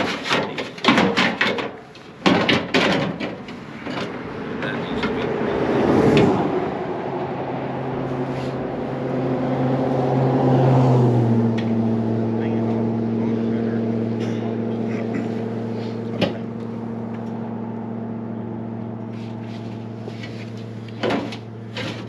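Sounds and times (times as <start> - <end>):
knocks and clanks: 0.0 - 5.5, 16.0 - 17.4, 20.1 - 22.0
heavy equipment engine running: 0.0 - 22.0.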